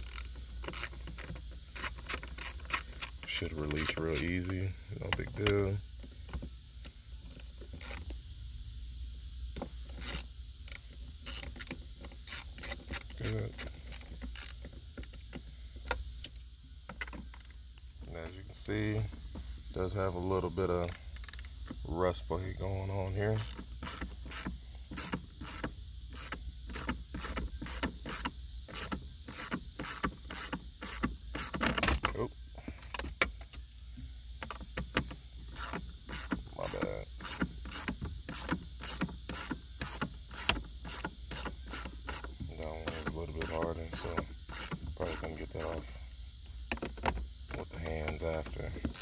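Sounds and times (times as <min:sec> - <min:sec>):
ratchet wrench clicking: 0:00.0 - 0:04.7, 0:06.8 - 0:08.2, 0:09.9 - 0:17.6, 0:20.6 - 0:21.7, 0:23.0 - 0:32.1, 0:34.4 - 0:49.0.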